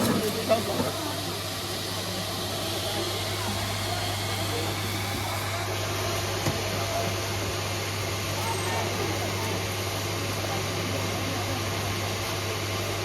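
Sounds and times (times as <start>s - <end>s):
blower-like rushing noise: 0.0s - 8.0s
faint background chatter: 0.0s - 13.0s.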